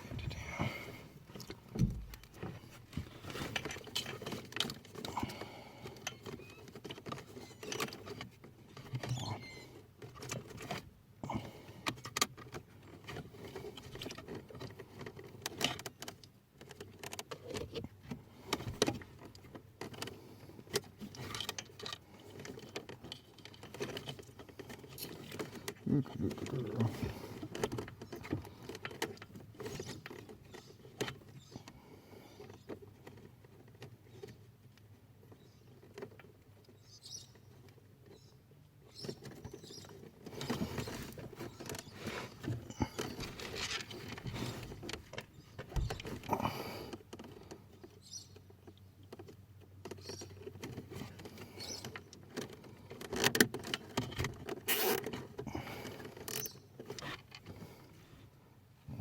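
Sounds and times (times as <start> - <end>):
wiring rustling: 38.9 - 47.6
cable ties zipping tight: 54.7 - 55.1.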